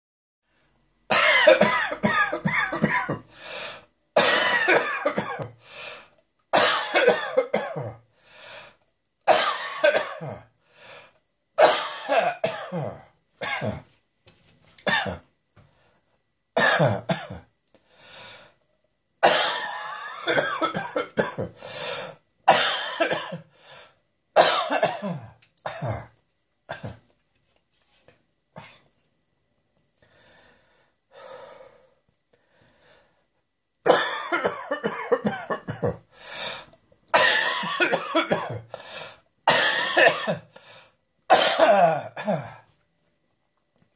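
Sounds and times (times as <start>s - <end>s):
person coughing harshly: 1.1s - 3.3s, 4.2s - 5.6s, 6.6s - 8.0s, 9.3s - 10.5s, 11.6s - 13.9s, 14.8s - 15.3s, 16.6s - 17.5s, 19.2s - 21.7s, 22.5s - 23.5s, 24.4s - 27.0s, 33.9s - 36.1s, 37.1s - 38.7s, 39.5s - 40.6s, 41.3s - 42.7s.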